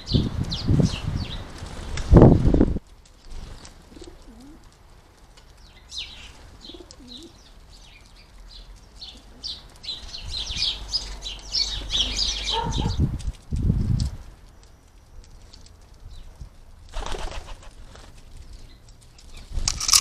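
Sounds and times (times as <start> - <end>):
songbirds chirping and twittering: 0.0 - 2.3, 5.2 - 16.6, 17.9 - 20.0
pigeon cooing: 3.9 - 4.6, 6.6 - 7.4, 11.8 - 13.0
wing flapping: 16.9 - 18.3.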